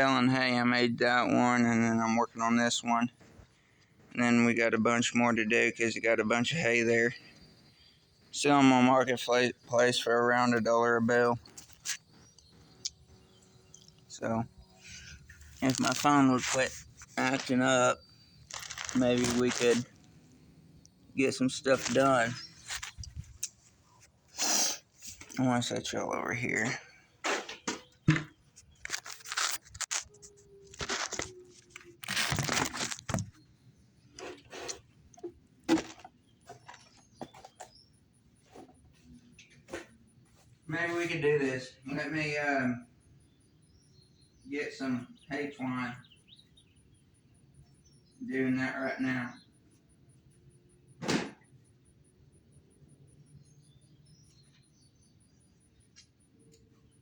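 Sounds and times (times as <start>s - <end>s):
rustling and crunching: 10.3s - 25.8s, 26.4s - 37.8s.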